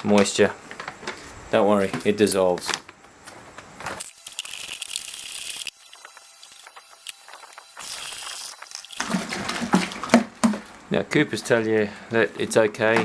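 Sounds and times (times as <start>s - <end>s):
liquid swishing in fermenter: 8.9s - 13.0s.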